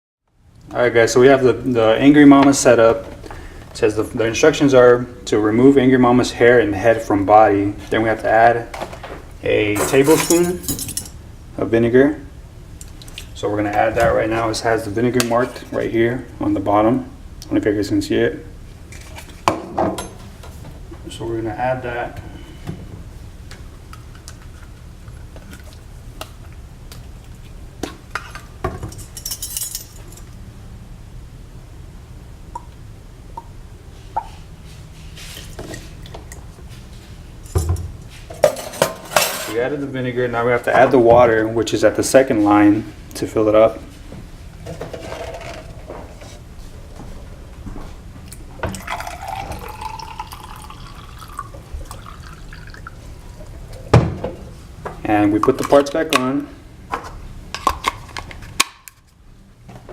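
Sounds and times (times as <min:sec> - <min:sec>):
vinegar pouring: 0:48.6 - 0:53.9
water filling plastic container: 0:48.7 - 0:53.6.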